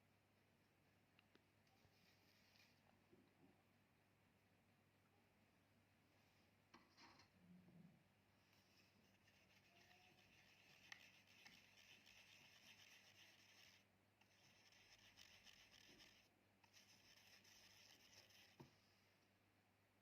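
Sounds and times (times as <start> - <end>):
drawing tool scratching a surface: 9.1 - 18.7.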